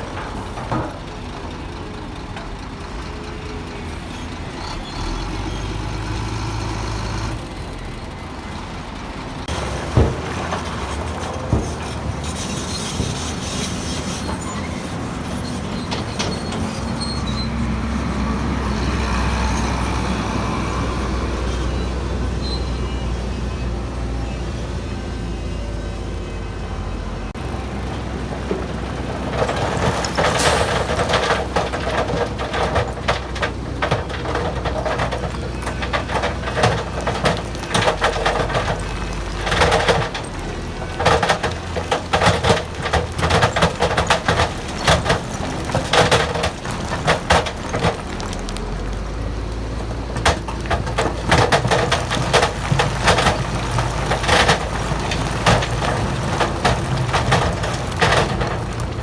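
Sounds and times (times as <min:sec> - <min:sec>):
diesel machinery running: 0:00.0 - 0:59.0
stones clattering against steel: 0:28.3 - 0:49.4, 0:50.0 - 0:59.0.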